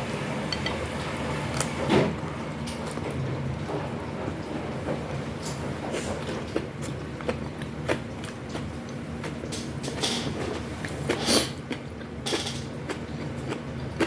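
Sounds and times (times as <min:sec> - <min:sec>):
chewing with crunches: 0:05.2 - 0:14.0.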